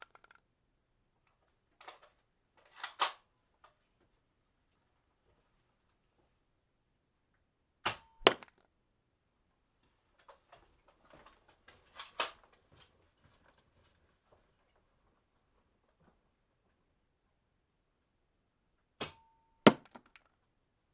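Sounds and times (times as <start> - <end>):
weapon sharp cracks: 7.9 - 8.6.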